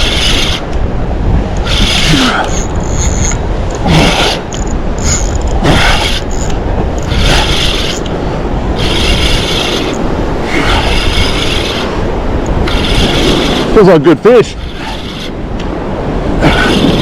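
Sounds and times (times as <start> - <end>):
fishing reel whirring: 0.0 - 0.6, 1.6 - 3.4, 4.0 - 8.1, 8.8 - 10.0, 10.7 - 12.0, 12.6 - 13.7
wind and surf rumble: 0.0 - 17.0.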